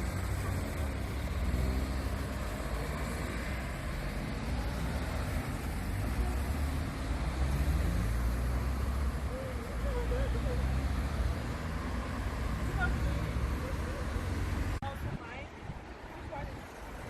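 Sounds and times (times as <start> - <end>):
road traffic: 0.0 - 17.0
faint voices: 9.0 - 17.0.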